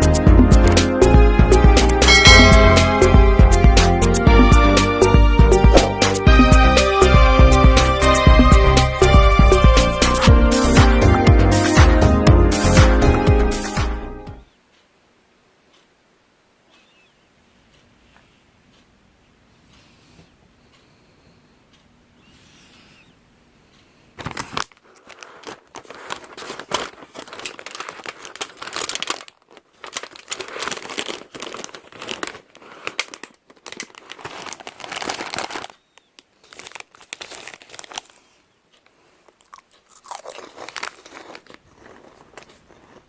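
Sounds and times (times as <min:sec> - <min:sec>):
person chewing crisp snack: 0:24.8 - 0:43.0.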